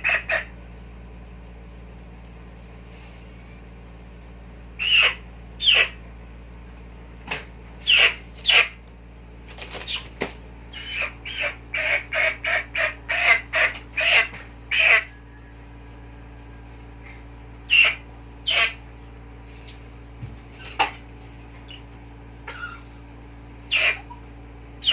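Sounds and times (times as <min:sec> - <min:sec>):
chicken squawking: 0:00.0 - 0:00.5, 0:04.8 - 0:06.0, 0:07.8 - 0:08.8, 0:09.6 - 0:16.3, 0:17.6 - 0:18.9, 0:21.6 - 0:23.0, 0:23.6 - 0:24.9.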